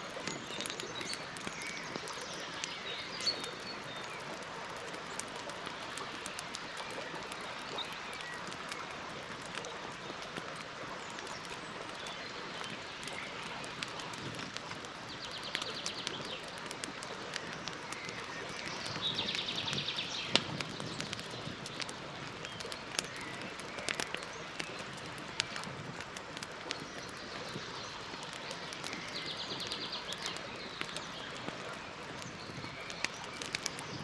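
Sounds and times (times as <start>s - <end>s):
burning wood popping: 0.0s - 34.0s
campfire crackling: 0.0s - 34.0s.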